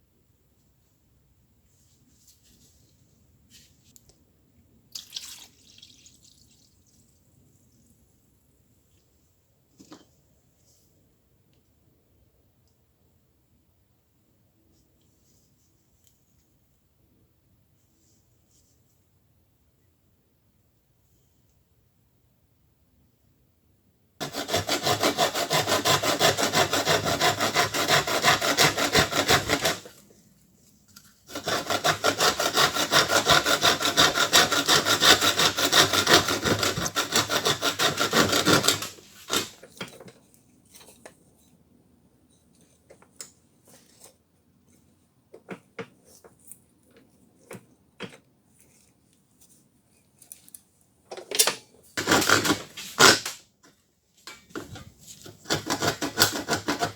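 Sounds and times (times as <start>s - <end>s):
hand tool scraping strokes: 24.2s - 30.1s, 31.0s - 39.9s, 52.0s - 53.4s, 54.3s - 56.9s.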